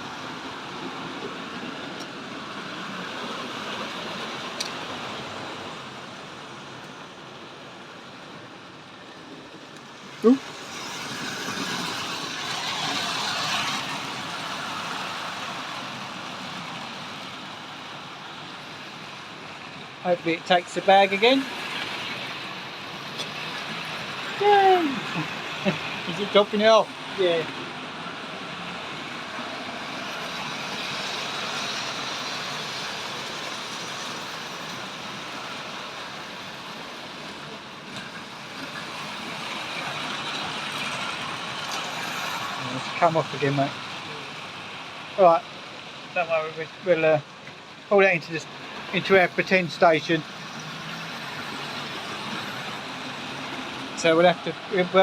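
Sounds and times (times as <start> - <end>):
model train rumbling whirr: 0.0 - 55.0.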